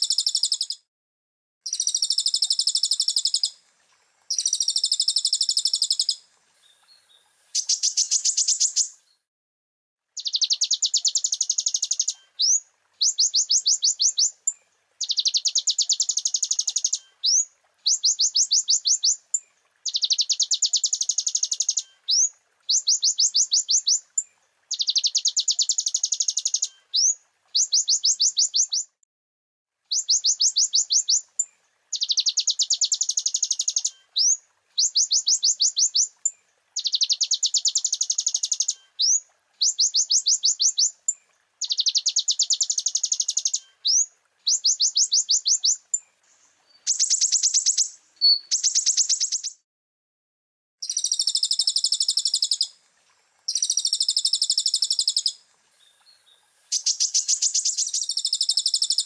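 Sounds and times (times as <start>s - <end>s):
sunbird trilling: 4.3s - 9.0s, 10.2s - 14.4s, 46.8s - 49.5s, 53.5s - 59.0s.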